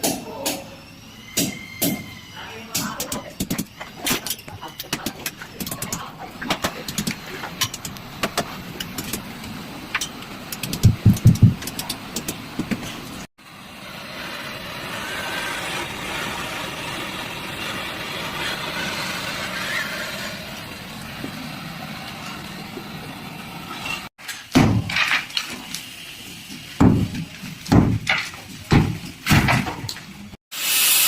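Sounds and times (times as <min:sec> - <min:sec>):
gas rushing hiss through pipes: 0:25.4 - 0:26.8, 0:30.5 - 0:31.0.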